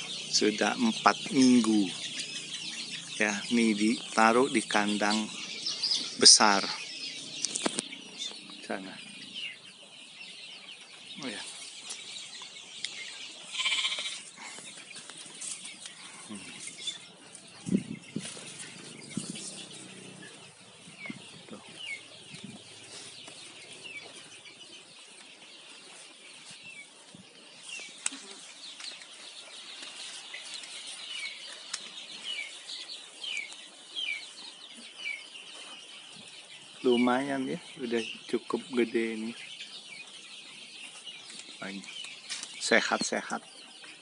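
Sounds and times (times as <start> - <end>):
chicks peeping: 0.0 - 44.0
wings and feet rustling: 14.0 - 20.0.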